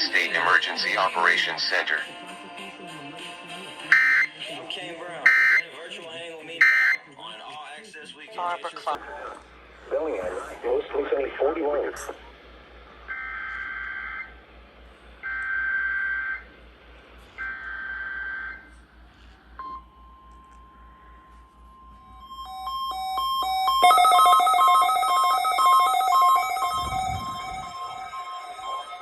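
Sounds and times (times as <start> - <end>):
steady weather radio alert tone: 0.0 - 2.3, 3.8 - 4.6, 5.2 - 5.8, 6.6 - 7.1, 8.4 - 12.3, 21.9 - 29.0
alarm beeping: 3.9 - 4.4, 5.2 - 5.7, 6.6 - 7.0, 15.2 - 16.5, 17.4 - 18.7, 19.6 - 29.0
warbling digital data bursts: 22.3 - 29.0.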